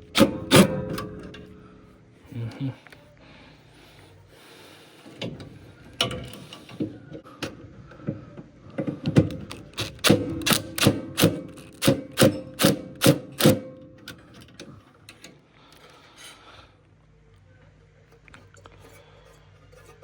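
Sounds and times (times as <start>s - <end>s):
faint low hum: 0.0s - 13.0s, 13.6s - 20.0s.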